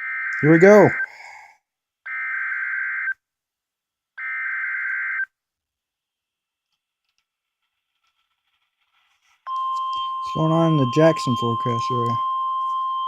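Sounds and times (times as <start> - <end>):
harsh digital data tones: 9.4 - 13.0.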